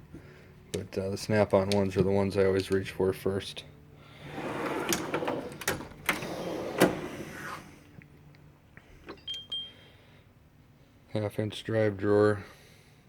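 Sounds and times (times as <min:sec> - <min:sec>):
tool box drawers rolling: 0:04.2 - 0:07.7
drawers clunking shut: 0:04.3 - 0:07.7.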